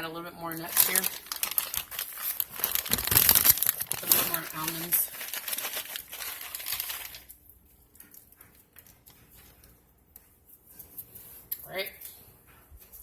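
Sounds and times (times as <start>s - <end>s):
bag of nuts rustling: 0.5s - 7.4s.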